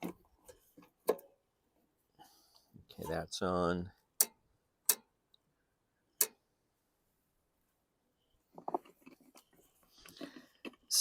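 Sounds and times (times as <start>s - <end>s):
faint rattling and shuffling: 0.0s - 4.0s, 7.0s - 11.0s.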